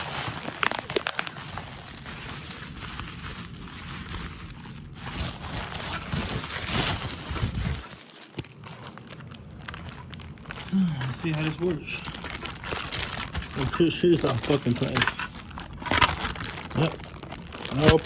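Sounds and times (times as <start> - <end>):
packaging rustling and crinkling: 0.0 - 18.0.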